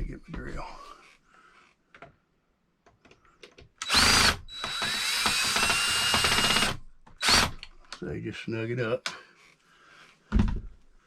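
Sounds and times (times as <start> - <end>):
power drill driving screw: 3.8 - 7.7.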